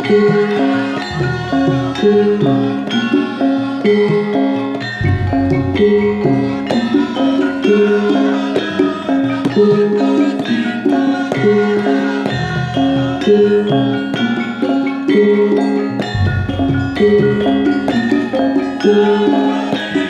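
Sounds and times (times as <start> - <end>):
hand drum strokes: 0.0 - 8.0, 12.3 - 20.0
metallophones ringing melody: 0.0 - 20.0.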